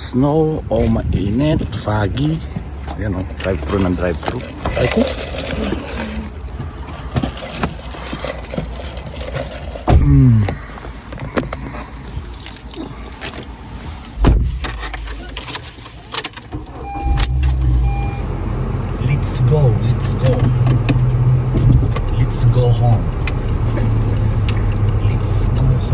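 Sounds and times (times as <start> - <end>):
car road noise rumble: 0.0 - 25.9
heavy low thump: 9.9 - 10.6, 14.2 - 14.7.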